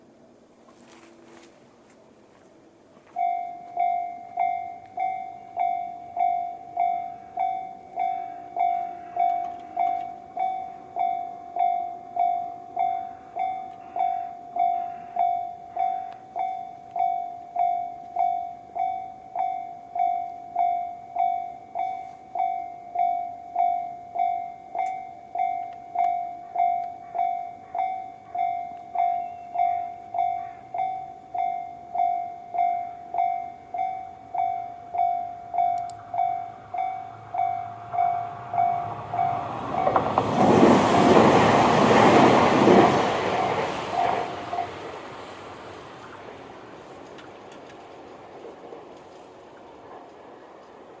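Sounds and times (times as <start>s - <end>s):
level crossing electronic bell: 3.1s - 40.0s.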